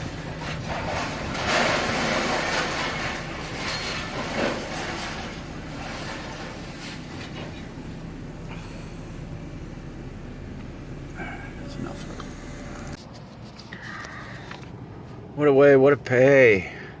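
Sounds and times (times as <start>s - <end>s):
scrap metal scraping and clattering: 0.0s - 8.7s
crane engine humming: 0.0s - 15.4s.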